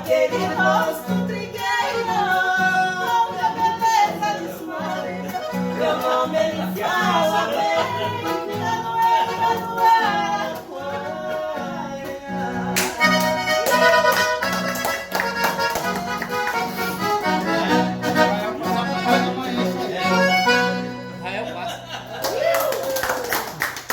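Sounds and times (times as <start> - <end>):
accordion playing lively tune: 0.0 - 21.8.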